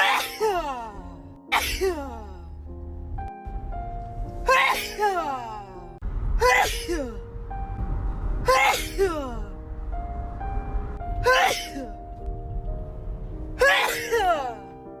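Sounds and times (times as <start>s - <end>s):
woman sneezing: 0.0s - 0.7s, 1.5s - 2.1s, 4.5s - 5.2s, 6.4s - 7.2s, 8.5s - 9.2s, 11.2s - 12.0s, 13.6s - 14.6s
background music with held notes: 0.0s - 6.1s, 6.7s - 15.0s.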